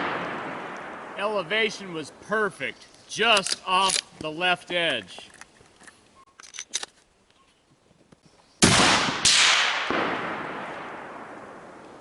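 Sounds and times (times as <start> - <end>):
echo rolling across range: 0.0 - 5.5, 8.6 - 12.0
suppressed rifle shot: 8.6 - 11.5
sharp crack: 8.6 - 12.0.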